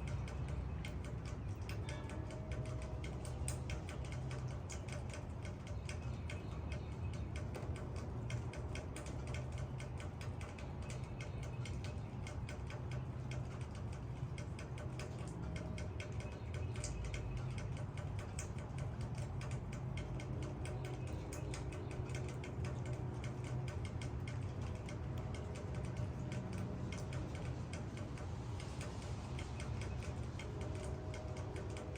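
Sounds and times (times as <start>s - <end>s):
steady low rumble: 0.0s - 31.9s
raindrops hitting leaves: 7.2s - 31.9s.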